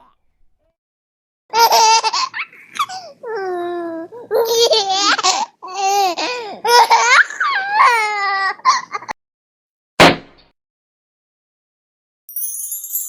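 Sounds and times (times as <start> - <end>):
baby crying: 2.7 - 9.2
sharp knock: 10.0 - 10.5.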